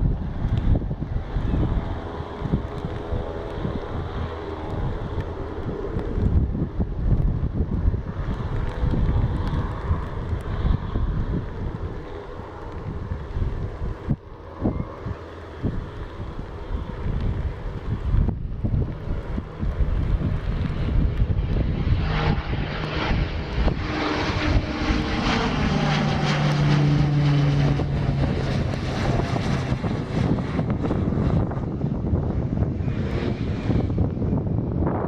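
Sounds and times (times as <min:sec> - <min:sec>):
propeller aircraft engine drone: 0:00.0 - 0:35.0
wind buffeting microphone: 0:00.0 - 0:35.0.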